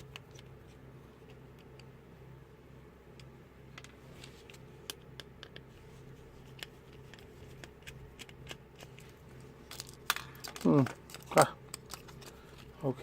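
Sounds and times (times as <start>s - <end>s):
plastic parts clicking and scraping: 6.4s - 12.8s.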